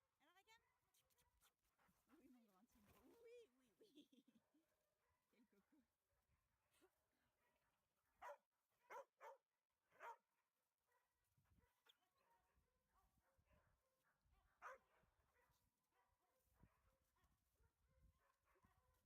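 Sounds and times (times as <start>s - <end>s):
dog barking faintly: 6.8s - 10.2s, 10.9s - 19.0s.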